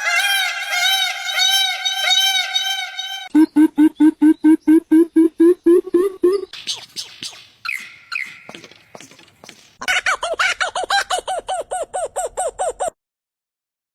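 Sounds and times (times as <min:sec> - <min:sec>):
chicken clucking and squawking: 0:10.2 - 0:13.0.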